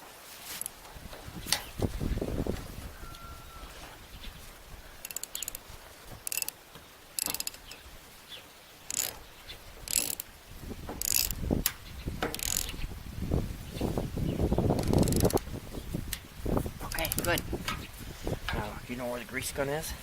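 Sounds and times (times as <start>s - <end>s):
ratchet wrench clicking: 5.0s - 5.6s, 6.2s - 6.5s, 7.2s - 7.6s, 8.9s - 9.1s, 9.9s - 10.2s, 11.0s - 11.4s, 12.3s - 12.7s, 14.8s - 15.4s.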